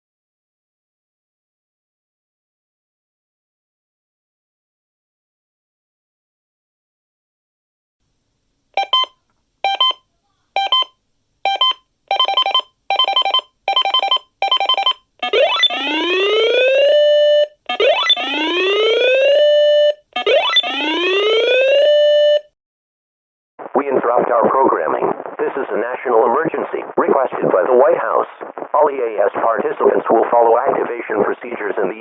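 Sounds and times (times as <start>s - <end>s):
synthesized beeps: 8.8s - 10.0s, 10.6s - 10.9s, 11.5s - 16.7s, 17.7s - 19.2s, 20.2s - 21.9s.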